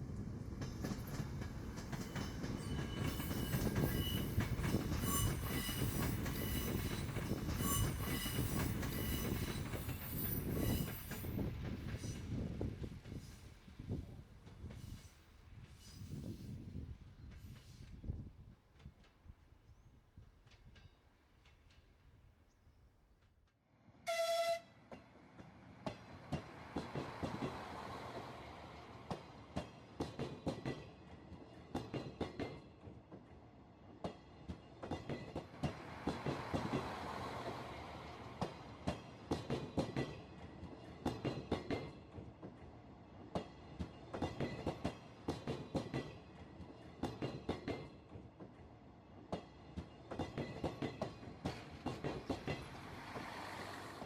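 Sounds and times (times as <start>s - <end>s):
train wheels clicking over rails: 0.4s - 13.6s, 24.9s - 32.9s, 34.0s - 42.6s, 49.2s - 54.0s
train horn blast: 24.0s - 24.8s.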